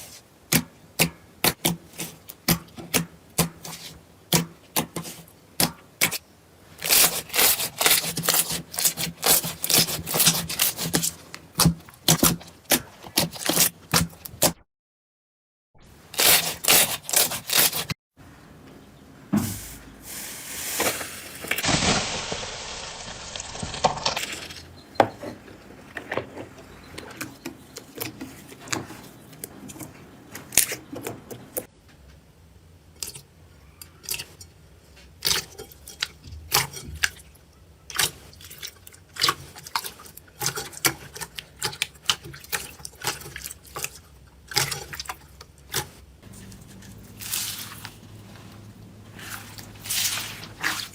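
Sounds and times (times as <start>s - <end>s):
slime squishing: 37.9s - 50.9s.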